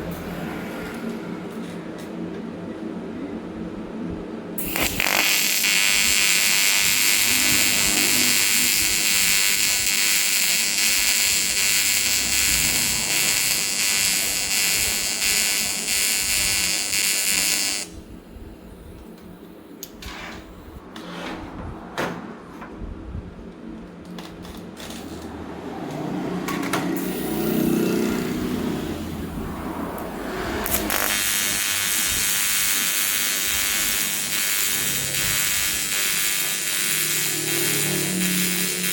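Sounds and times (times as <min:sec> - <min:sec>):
welding arc buzzing: 0:04.6 - 0:18.7, 0:27.0 - 0:38.9.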